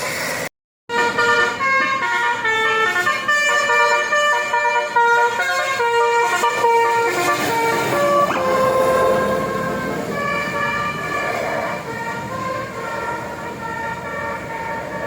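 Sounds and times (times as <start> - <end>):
multi-tone musical horn melody: 0.9 - 15.0.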